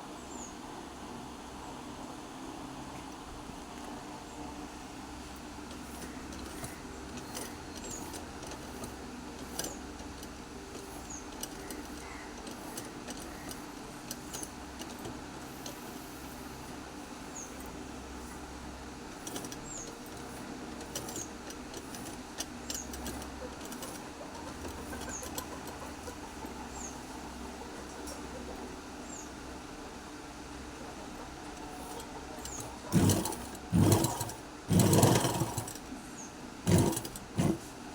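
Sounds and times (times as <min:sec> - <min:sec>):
sewing machine running: 0:05.6 - 0:18.5, 0:19.1 - 0:26.6, 0:31.5 - 0:35.9, 0:36.6 - 0:37.8.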